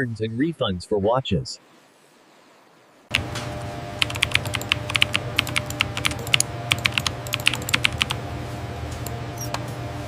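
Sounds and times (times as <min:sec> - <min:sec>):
steady low hum: 0:00.0 - 0:10.0
keyboard key clicks: 0:04.0 - 0:08.2.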